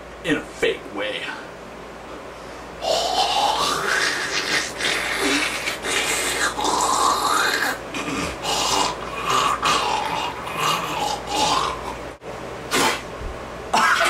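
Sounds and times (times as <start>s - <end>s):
person making spitting noises: 2.8s - 12.0s, 12.7s - 13.1s.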